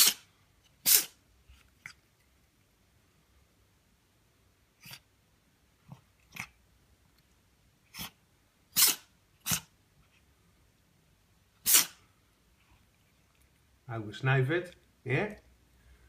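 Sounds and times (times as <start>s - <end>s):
cat sneezing: 0.0s - 1.2s, 4.8s - 5.1s, 7.9s - 9.7s, 11.6s - 12.0s.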